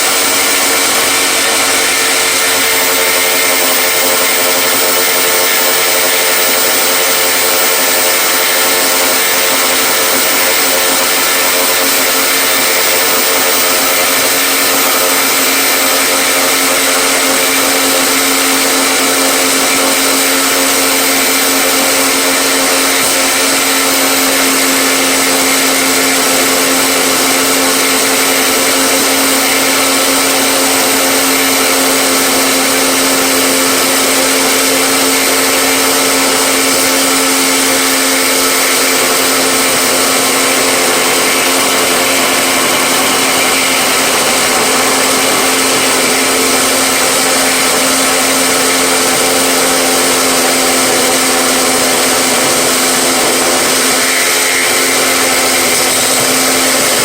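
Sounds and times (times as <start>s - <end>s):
power tool motor whining: 0.0s - 57.0s.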